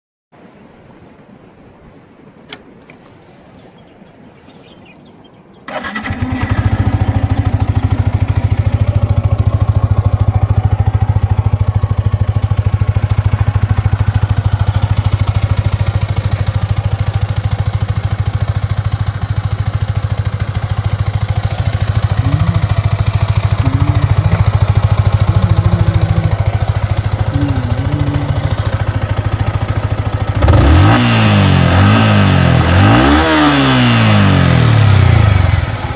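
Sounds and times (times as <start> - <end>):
click: 2.5 - 3.0
motorcycle engine starting and idling: 5.7 - 35.9.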